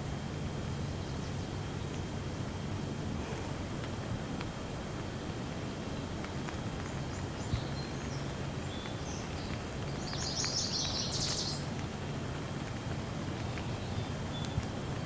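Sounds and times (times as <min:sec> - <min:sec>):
steady rain falling: 0:01.5 - 0:15.0
birds chirping: 0:06.8 - 0:11.7.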